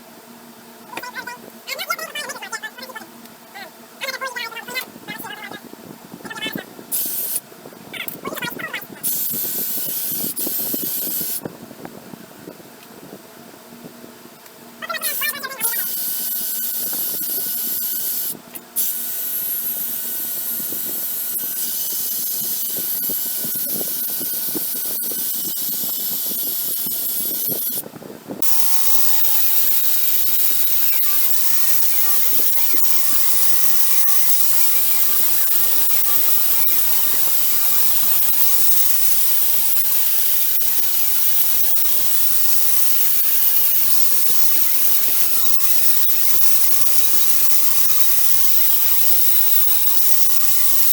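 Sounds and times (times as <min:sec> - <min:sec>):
power tool grinding metal: 0:28.4 - 0:50.9.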